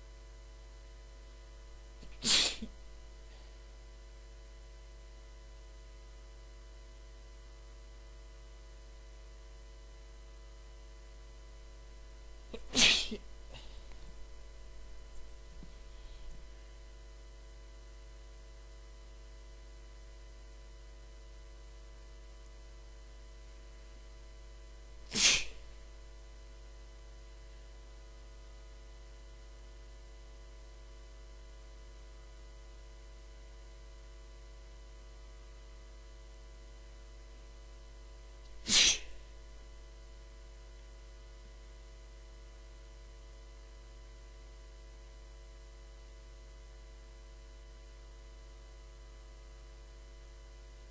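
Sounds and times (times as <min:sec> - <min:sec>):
faint electrical hum: 0:00.0 - 0:50.9
person sneezing: 0:02.0 - 0:03.4, 0:12.5 - 0:16.5, 0:25.0 - 0:25.8, 0:38.5 - 0:39.3.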